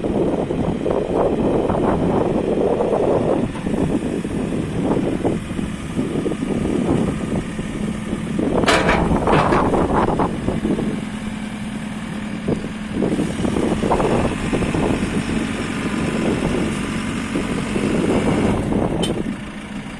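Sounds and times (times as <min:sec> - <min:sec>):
diesel engine humming: 0:00.0 - 0:19.9
machine clunks and rattles: 0:03.5 - 0:04.1, 0:08.5 - 0:10.2.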